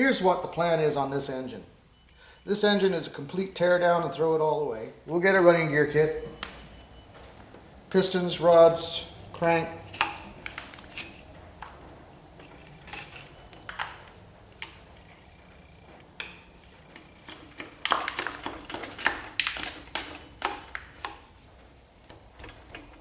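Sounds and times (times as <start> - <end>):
metal tools clinking and clattering: 12.4 - 13.9.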